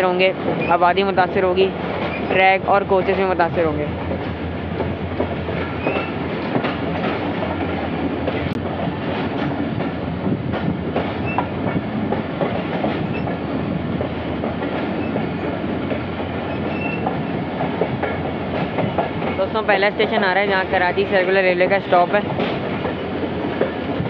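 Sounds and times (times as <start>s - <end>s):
train wheels rumbling on rail: 0.0s - 24.0s
wheels clicking over rail joints: 4.0s - 19.6s.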